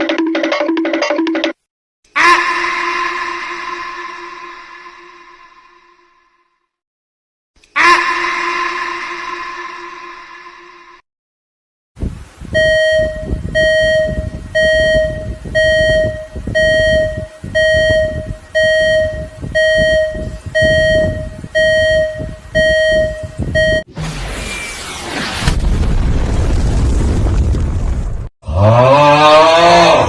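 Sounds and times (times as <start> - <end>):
electronic beeper: 12.6 - 25.1
loud burst of noise: 23.9 - 28.3.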